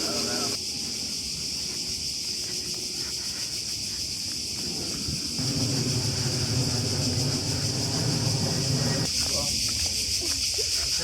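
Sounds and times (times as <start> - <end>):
insect chorus buzzing: 0.0 - 11.0
low drone: 5.4 - 9.1.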